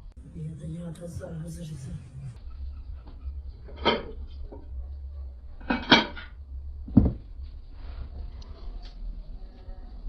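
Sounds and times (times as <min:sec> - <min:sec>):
steady low rumble: 0:00.0 - 0:10.0
kitchenware clattering: 0:03.6 - 0:04.3, 0:05.6 - 0:06.4.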